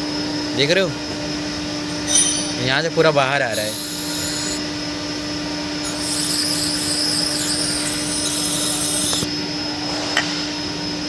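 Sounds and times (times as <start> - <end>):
aerosol spray hiss: 5.9 - 9.3.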